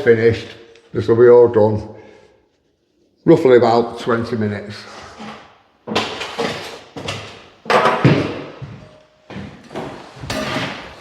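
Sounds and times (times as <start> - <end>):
thuds and rustling of tools: 5.9 - 11.0.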